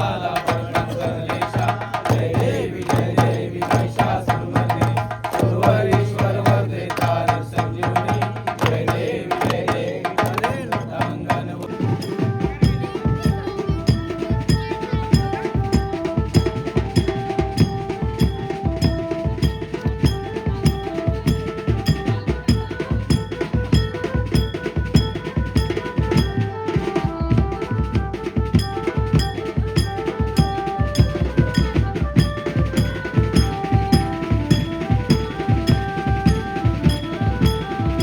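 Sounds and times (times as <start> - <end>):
drums and cymbals beat: 0.0 - 38.0
banjo band music: 11.4 - 38.0.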